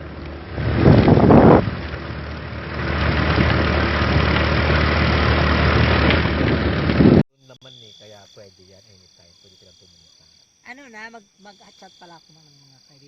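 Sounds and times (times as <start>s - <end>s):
road and wind noise: 0.0s - 7.2s
vehicle engine running: 0.0s - 7.2s.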